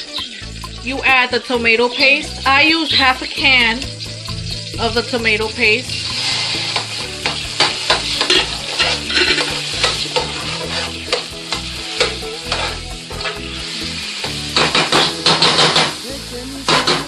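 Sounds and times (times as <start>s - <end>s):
paste sizzling in hot oil: 0.0s - 17.0s
spoon scraping and tapping pot: 6.8s - 11.2s.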